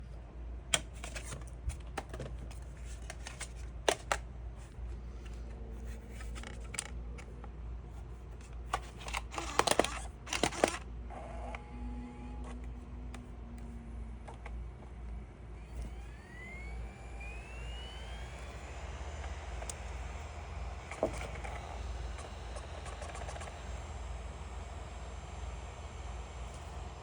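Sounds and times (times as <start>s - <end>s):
faint steady whirring: 0.0s - 27.0s
disc drive mechanical clicks: 8.4s - 14.9s, 15.6s - 24.9s.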